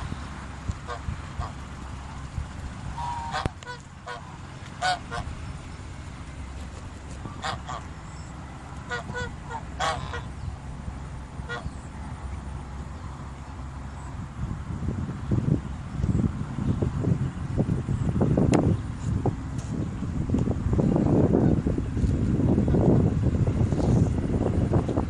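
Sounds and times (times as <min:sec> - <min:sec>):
steady low rumble: 0:00.0 - 0:25.0
geese honking: 0:00.7 - 0:12.4.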